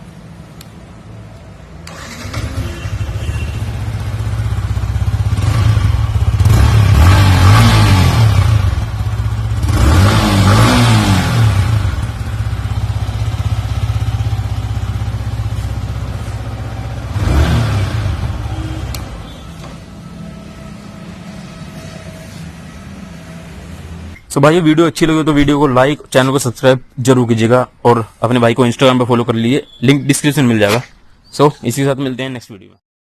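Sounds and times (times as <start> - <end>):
motorcycle engine idling and revving: 0.0 - 24.2.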